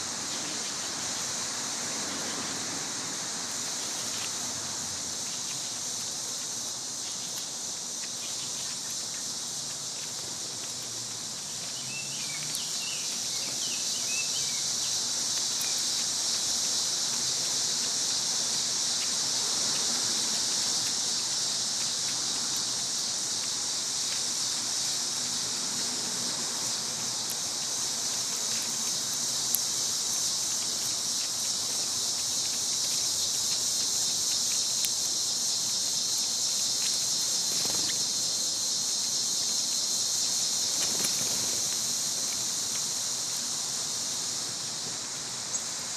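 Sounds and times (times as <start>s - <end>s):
insect chorus: 0.0s - 45.9s
faint ticks: 27.2s - 38.1s.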